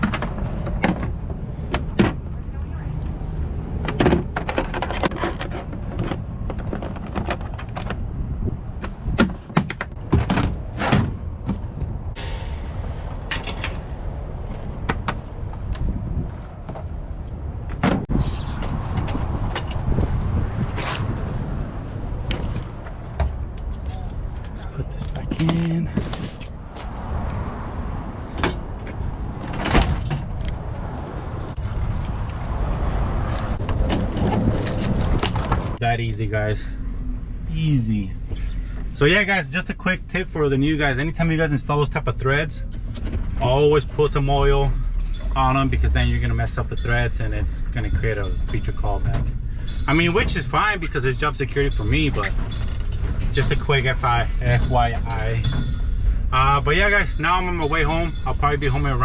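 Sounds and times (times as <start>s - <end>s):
clicks knocks and thunks: 0.0s - 2.3s, 3.8s - 8.1s, 8.7s - 12.0s, 14.5s - 15.9s, 17.6s - 18.1s
low rumble: 10.0s - 25.3s, 44.6s - 59.0s.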